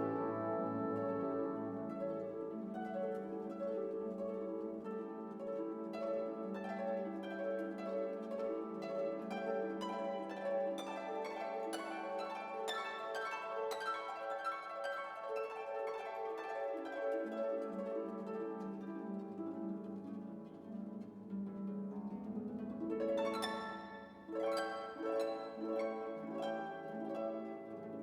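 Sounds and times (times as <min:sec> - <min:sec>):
sustained string tones: 0:00.0 - 0:02.7
plucked harp-like notes: 0:00.0 - 0:28.0.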